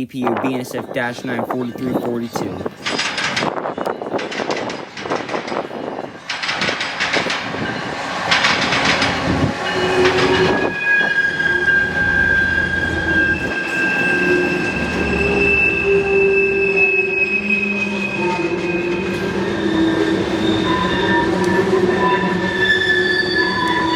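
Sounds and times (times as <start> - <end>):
train wheels clacking over rail joints: 2.7 - 11.2
high-pitched wheel squeal: 8.6 - 23.9.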